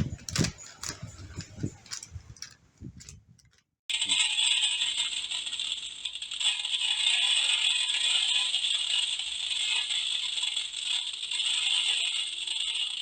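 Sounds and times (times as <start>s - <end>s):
dense rattling: 0.0s - 3.6s.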